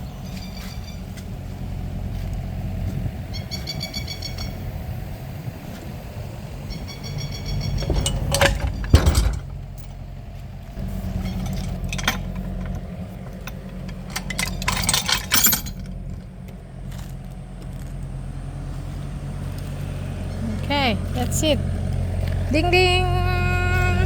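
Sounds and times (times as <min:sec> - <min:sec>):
low mechanical hum: 0:00.0 - 0:24.0
metal tools clinking: 0:07.2 - 0:10.0, 0:11.0 - 0:16.3.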